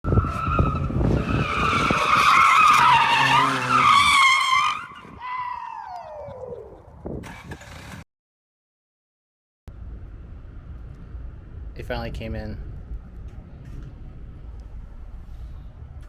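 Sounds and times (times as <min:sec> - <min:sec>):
car engine rumble: 0:00.0 - 0:05.8, 0:06.4 - 0:08.0, 0:09.7 - 0:16.0
tyres squealing: 0:00.2 - 0:05.8.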